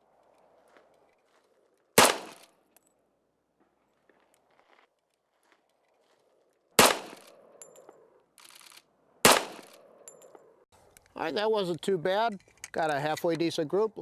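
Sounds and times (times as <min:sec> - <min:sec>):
pistol shots with echo: 0:02.0 - 0:02.4, 0:06.8 - 0:07.3, 0:09.2 - 0:09.8.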